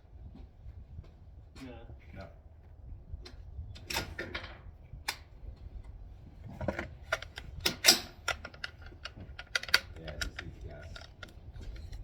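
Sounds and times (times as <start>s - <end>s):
rifle action clicking and clacking: 7.1s - 12.0s.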